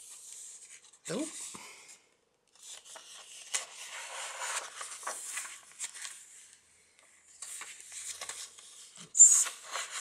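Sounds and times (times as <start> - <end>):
paper pages rustling: 2.5 - 10.0.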